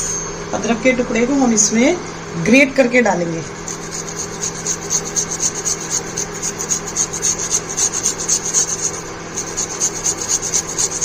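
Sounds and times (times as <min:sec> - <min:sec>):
ginger grated on a grater: 0:03.6 - 0:11.0.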